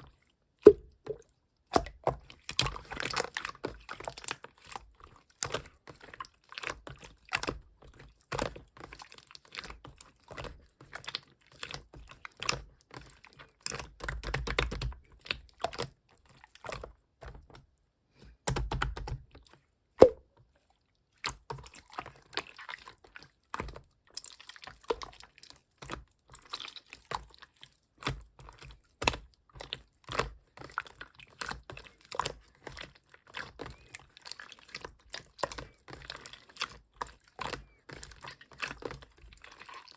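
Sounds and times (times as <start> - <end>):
loud slime pop: 0.6 - 1.2, 20.0 - 20.2
hands squishing slime: 0.6 - 17.0, 21.2 - 39.9.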